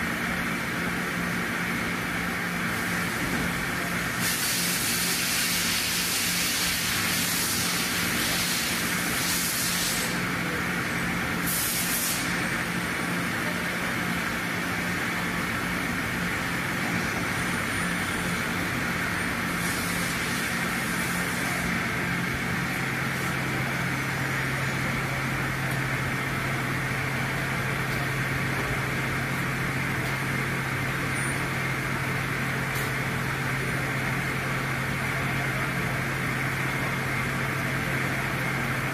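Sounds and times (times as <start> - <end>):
machine hum and hiss: 0.0 - 38.9
short hissing bursts: 4.1 - 10.2, 11.4 - 12.5, 19.5 - 21.6.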